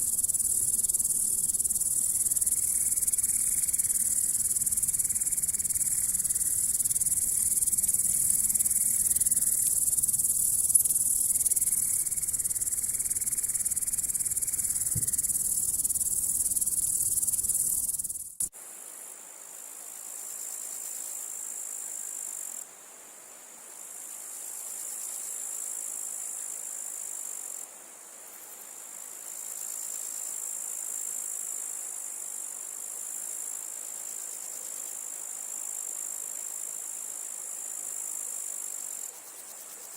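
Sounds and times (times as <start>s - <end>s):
grasshopper stridulating: 0.0s - 18.5s, 37.9s - 39.9s.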